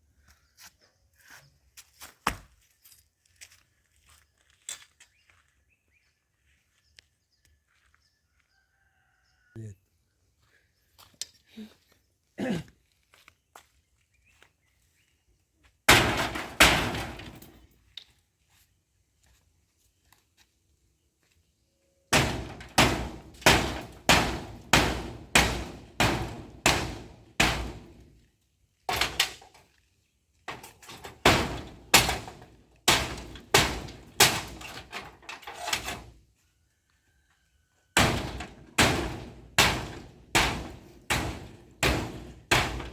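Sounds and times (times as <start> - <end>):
heavy tool striking timber: 15.9 - 17.6, 22.1 - 28.0, 28.9 - 29.4, 30.5 - 36.0, 38.0 - 42.9.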